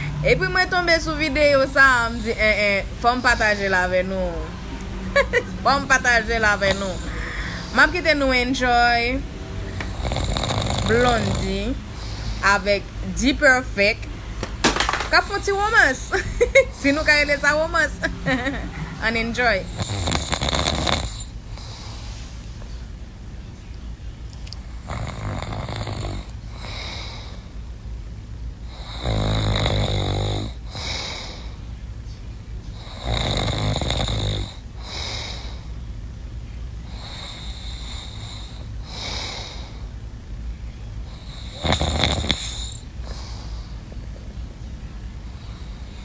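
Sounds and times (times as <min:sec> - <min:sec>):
loud low snores: 0:00.0 - 0:13.6, 0:16.8 - 0:22.1, 0:24.6 - 0:27.5, 0:28.7 - 0:31.6, 0:32.8 - 0:35.7, 0:36.9 - 0:39.9, 0:41.1 - 0:44.0
soft breaths: 0:00.0 - 0:14.4, 0:15.5 - 0:46.0.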